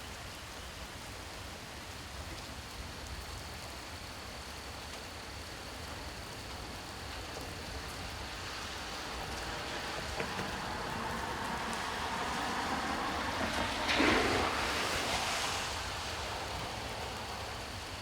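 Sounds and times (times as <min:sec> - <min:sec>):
steady rain falling: 0:00.0 - 0:18.0.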